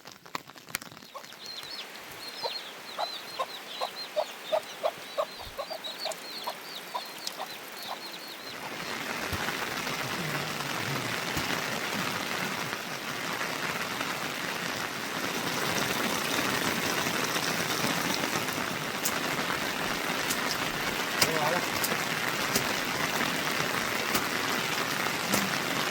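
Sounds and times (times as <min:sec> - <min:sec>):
heavy rain hissing: 0:01.3 - 0:25.9
chickens clucking: 0:02.3 - 0:09.5.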